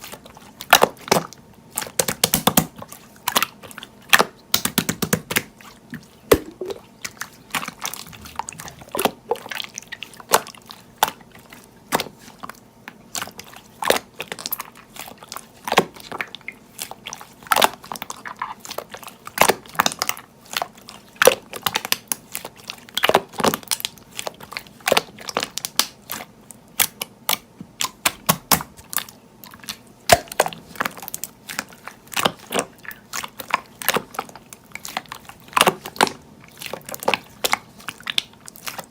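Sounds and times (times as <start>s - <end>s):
slime clicking and popping: 1.8s - 3.5s, 4.1s - 5.5s, 6.3s - 6.8s, 24.9s - 26.0s, 26.8s - 34.2s.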